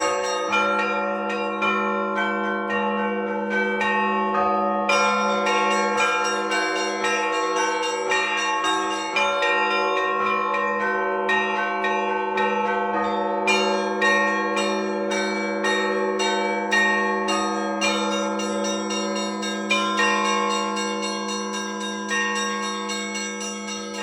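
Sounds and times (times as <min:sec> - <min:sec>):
hum of large bells: 0:00.0 - 0:24.0
small church bells struck quickly: 0:00.0 - 0:24.0.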